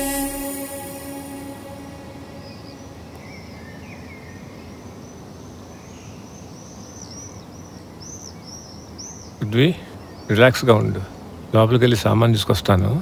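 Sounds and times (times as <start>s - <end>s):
low background noise: 0.0s - 13.0s
small birds chirping: 2.4s - 11.9s.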